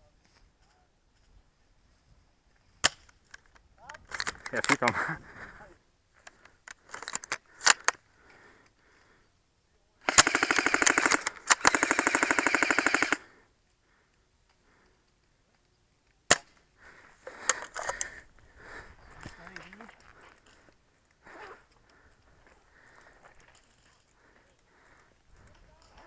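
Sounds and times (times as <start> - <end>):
airsoft gun full-auto rattle: 10.0 - 13.3
sharp clicks: 10.1 - 13.2
sharp crack: 16.3 - 16.6.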